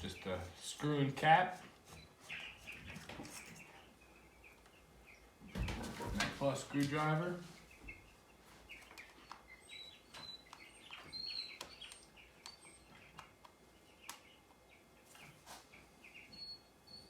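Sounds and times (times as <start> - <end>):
bird chirps: 2.0 - 5.8, 7.6 - 17.0.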